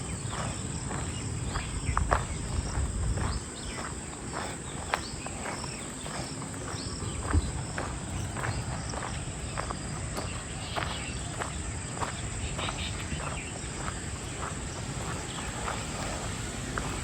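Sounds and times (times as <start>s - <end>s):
footsteps on a path: 0.0s - 17.0s
high drone of insects: 0.0s - 17.0s.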